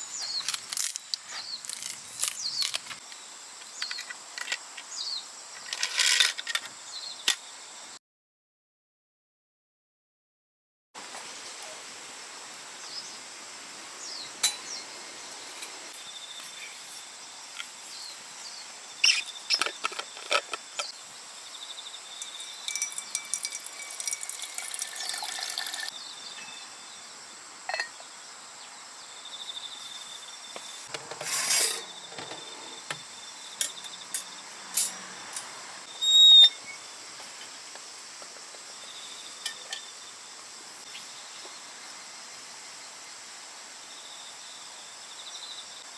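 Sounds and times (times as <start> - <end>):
insects chirping: 0.0 - 8.0, 11.0 - 45.9
kettle and mug clinking: 14.4 - 14.8, 22.2 - 26.6, 27.7 - 28.0.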